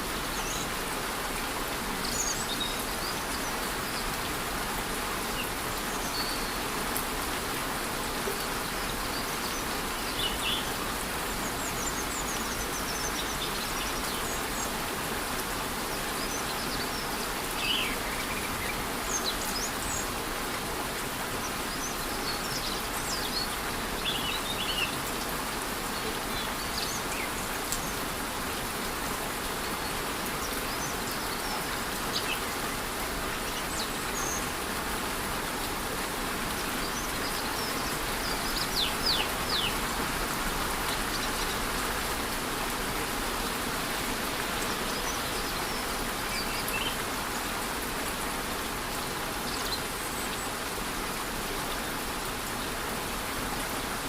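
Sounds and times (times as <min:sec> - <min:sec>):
light rain: 0:00.0 - 0:54.0
waterfall rushing: 0:07.6 - 0:54.0
birds chirping: 0:36.4 - 0:41.9.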